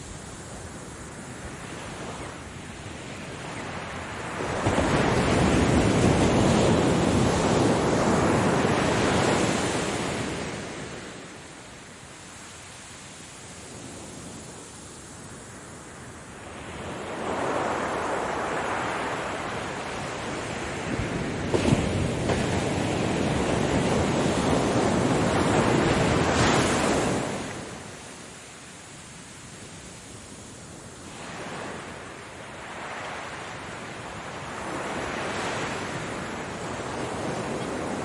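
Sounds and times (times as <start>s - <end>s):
ocean waves breaking: 3.8s - 11.5s, 16.4s - 29.0s, 30.5s - 38.0s.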